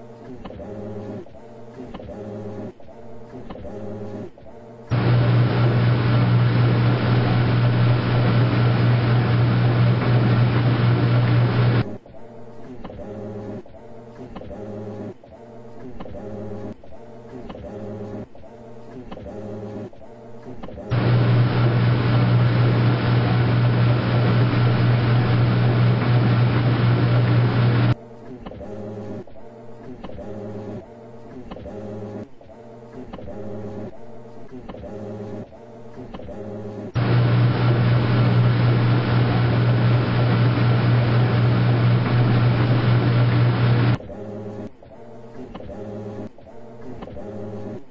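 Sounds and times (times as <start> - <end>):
low buzzing tone: 4.9 - 11.8, 20.9 - 28.0, 37.0 - 44.0
washing machine humming: 4.9 - 11.8, 20.9 - 28.0, 37.0 - 44.4.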